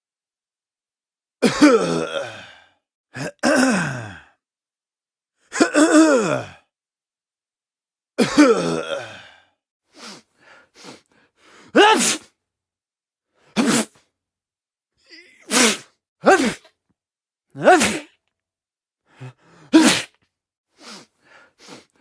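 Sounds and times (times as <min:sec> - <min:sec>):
person coughing: 0:01.4 - 0:02.3, 0:03.2 - 0:04.0, 0:05.5 - 0:06.3, 0:08.2 - 0:09.0
person sneezing: 0:11.7 - 0:12.4, 0:13.5 - 0:14.1, 0:15.1 - 0:16.8, 0:17.6 - 0:18.2, 0:19.7 - 0:20.2.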